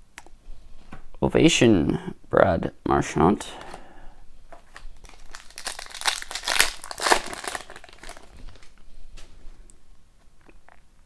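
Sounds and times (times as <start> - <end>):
foil wrapper crinkling: 4.6 - 8.8.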